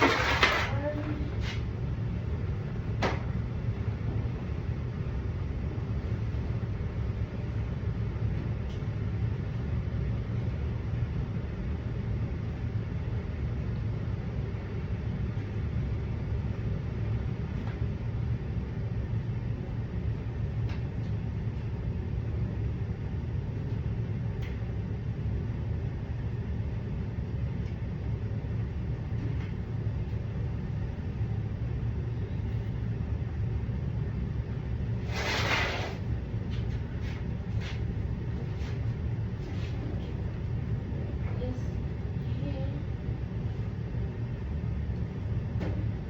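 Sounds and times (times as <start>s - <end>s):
clothes dryer rumbling: 0.0s - 46.0s
rustling noise: 35.0s - 40.2s.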